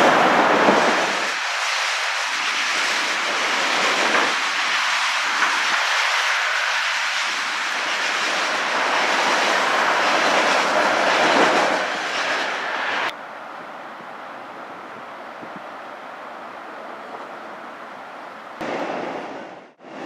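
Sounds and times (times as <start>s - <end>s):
train wheels rumbling on rails: 0.0s - 13.2s.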